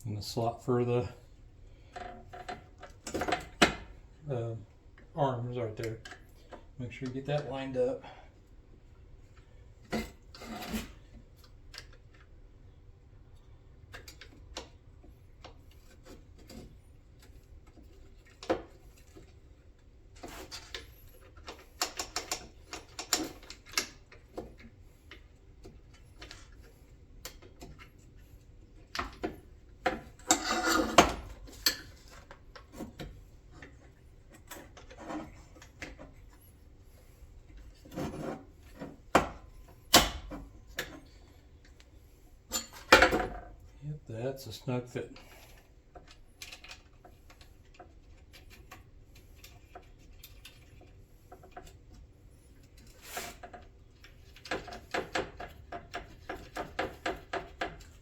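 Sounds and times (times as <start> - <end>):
plastic parts clicking and scraping: 45.2 - 58.0.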